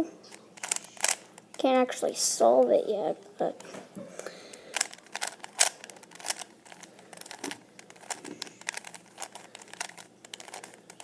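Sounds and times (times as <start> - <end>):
speed cube clicking: 0.6 - 1.2, 4.7 - 11.0.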